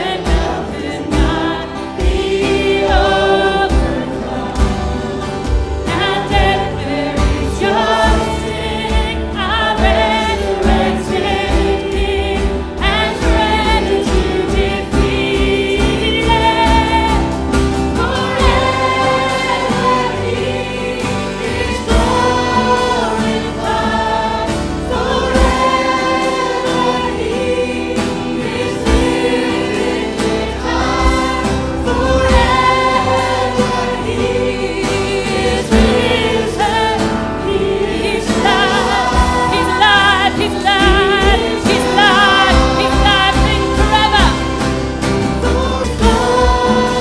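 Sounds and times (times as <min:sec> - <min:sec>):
voices singing: 0:00.0 - 0:47.0
worship song with band: 0:00.0 - 0:47.0.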